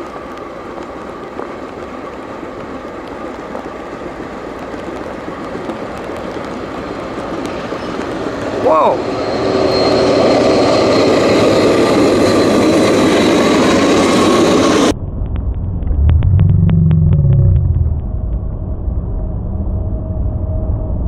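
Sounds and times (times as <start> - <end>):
freight train rushing: 0.0 - 15.0
low rumble: 14.9 - 21.0.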